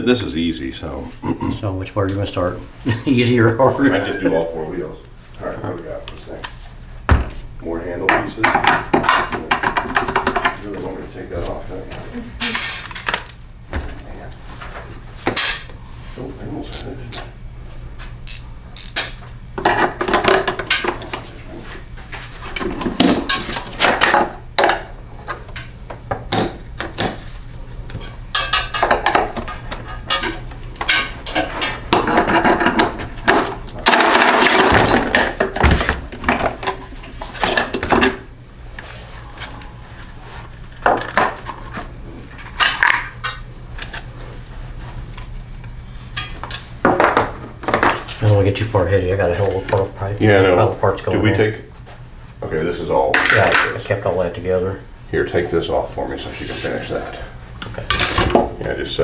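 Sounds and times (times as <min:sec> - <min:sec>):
steady low hum: 0:00.0 - 0:59.0
metal parts clinking and clattering: 0:12.4 - 0:13.4, 0:18.3 - 0:19.2, 0:28.3 - 0:35.4, 0:57.8 - 0:58.5.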